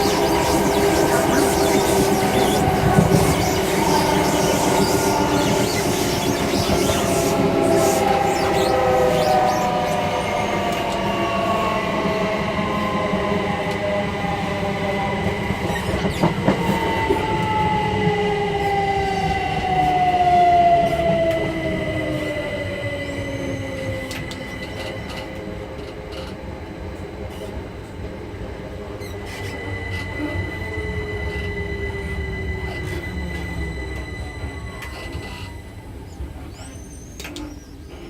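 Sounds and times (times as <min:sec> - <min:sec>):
traction motor whine: 0:00.0 - 0:11.7
train wheel and rail noise: 0:00.0 - 0:38.0.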